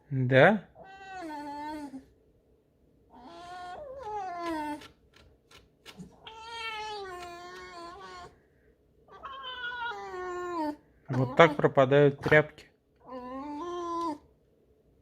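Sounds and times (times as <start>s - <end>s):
fox whining cries: 0.8s - 2.1s, 3.1s - 5.0s, 6.0s - 8.4s, 9.1s - 11.6s, 13.0s - 14.3s.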